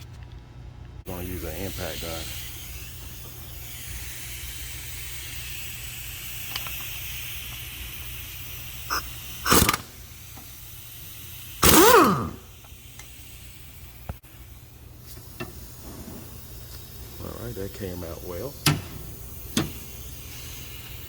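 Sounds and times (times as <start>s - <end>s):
steady low hum: 0.0s - 21.0s
impact gun bursts: 9.4s - 10.0s, 11.6s - 12.5s.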